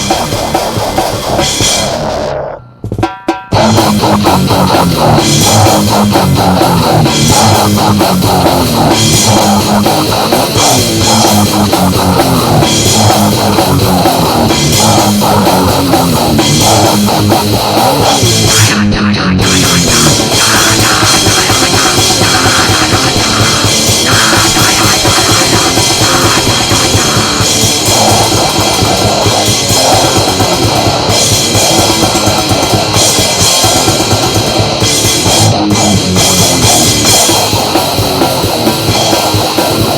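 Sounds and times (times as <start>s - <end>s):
heavy metal music: 0.0s - 39.9s.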